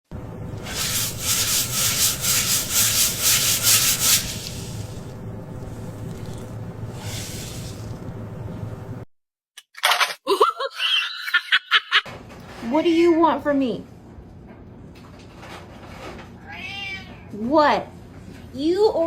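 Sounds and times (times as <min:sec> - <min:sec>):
low steady hum: 0:00.1 - 0:09.1
scratchy rubbing strokes: 0:00.6 - 0:08.2.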